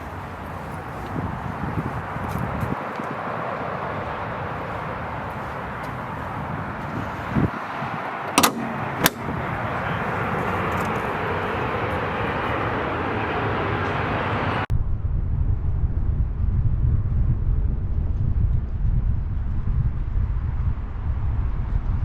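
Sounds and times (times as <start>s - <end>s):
road and tyre noise: 0.0s - 14.8s
sharp clicks: 8.3s - 9.5s.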